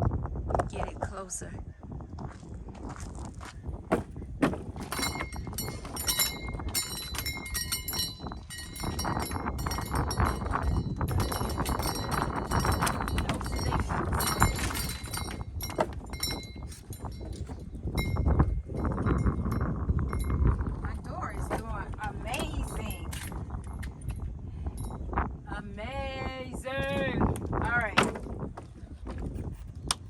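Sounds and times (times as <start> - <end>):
steady low rumble: 0.0 - 29.0
bell-like metallic clinking: 3.9 - 20.5, 22.3 - 23.3.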